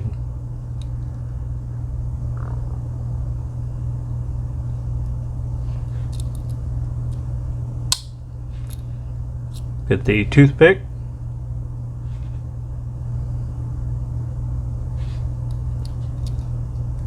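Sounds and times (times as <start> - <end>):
low rumble: 0.0 - 9.9
knife blade snapping shut: 7.9 - 8.8.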